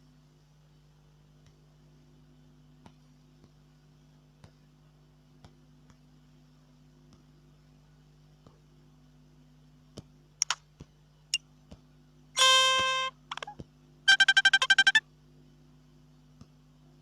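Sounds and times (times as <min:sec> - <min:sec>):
buzzy electronic tone: 0:12.4 - 0:15.0
electronic chirps and clicks: 0:12.4 - 0:15.0
rapid electronic beeps: 0:13.3 - 0:15.0.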